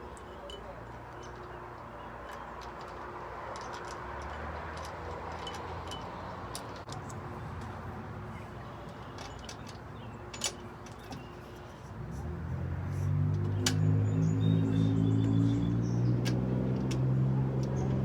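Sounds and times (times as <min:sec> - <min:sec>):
metal hardware clicking: 0:00.1 - 0:07.8, 0:08.8 - 0:12.0.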